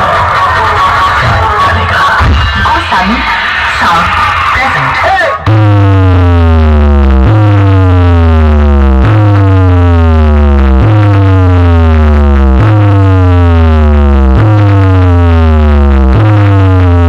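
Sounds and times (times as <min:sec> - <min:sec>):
heavy pulsing bass: 0:00.0 - 0:17.0.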